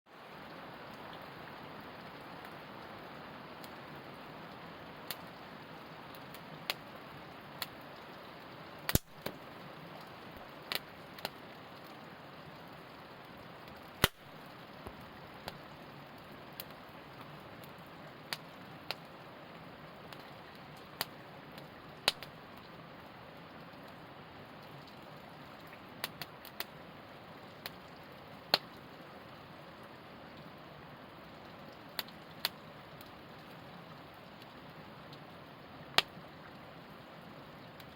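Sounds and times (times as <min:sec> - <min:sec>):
campfire hissing: 0:00.2 - 0:37.9
burning wood popping: 0:08.9 - 0:09.4, 0:14.0 - 0:14.2.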